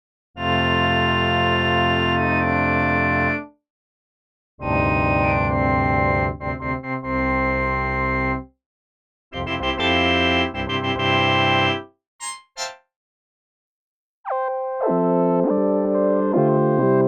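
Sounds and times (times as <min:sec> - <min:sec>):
synthesizer organ-like chords: 0:04.6 - 0:08.4, 0:09.4 - 0:11.8.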